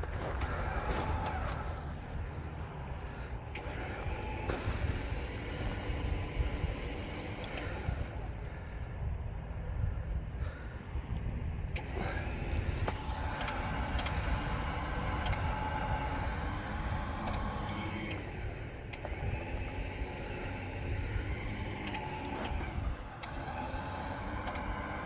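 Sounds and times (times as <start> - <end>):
electric winch motor whining: 0.0 - 8.8, 11.7 - 25.0
low steady rumble: 0.0 - 25.0.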